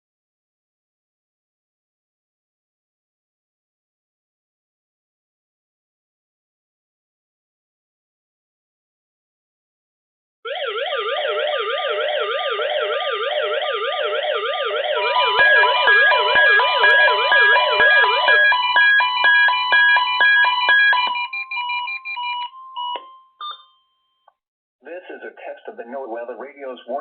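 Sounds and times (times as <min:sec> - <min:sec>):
warbling siren tones: 0:10.5 - 0:23.2
rapid pulsed beeps: 0:15.1 - 0:23.7.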